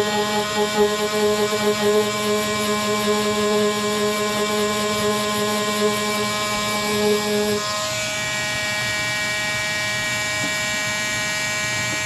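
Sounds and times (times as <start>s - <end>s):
low hum: 0.0s - 7.7s
power sander motor whining: 0.0s - 8.3s.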